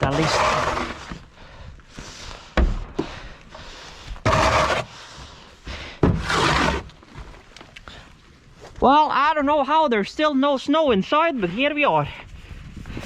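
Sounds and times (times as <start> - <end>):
snow shovel scraping snow: 0.0 - 1.2, 4.2 - 5.1, 6.2 - 7.0.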